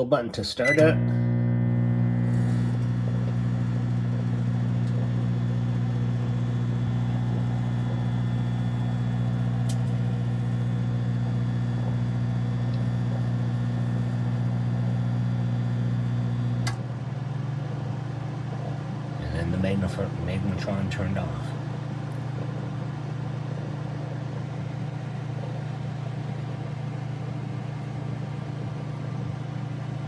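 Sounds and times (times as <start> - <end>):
fan and turntable running: 0.0 - 30.0
microwave oven humming: 0.0 - 30.0
microwave click: 0.6 - 16.9.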